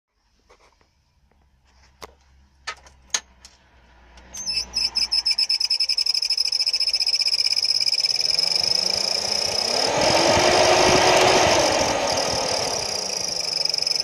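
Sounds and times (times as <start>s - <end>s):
blower motor squealing: 4.4s - 14.0s.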